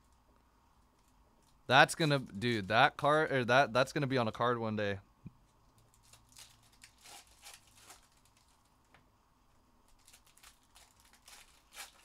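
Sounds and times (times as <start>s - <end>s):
cards and wrappers rustling: 0.9s - 3.2s, 5.7s - 8.7s, 9.8s - 12.0s.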